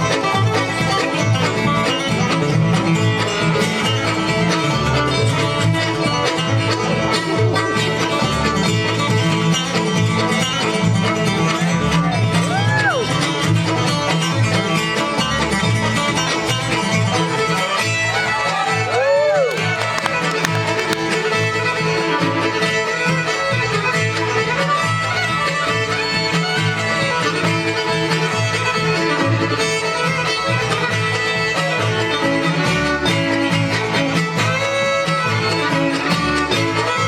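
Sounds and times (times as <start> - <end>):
banjo: 0.0 - 12.2
guitar: 0.0 - 13.1
fiddle: 22.4 - 37.0.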